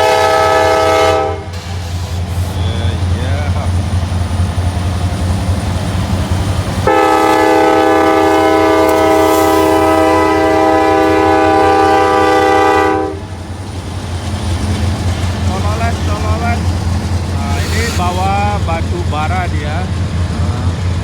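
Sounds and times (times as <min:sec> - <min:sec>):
locomotive air horn blast: 0:00.0 - 0:02.7, 0:06.8 - 0:13.3, 0:17.5 - 0:18.3
low rumble of passing train: 0:00.0 - 0:21.0.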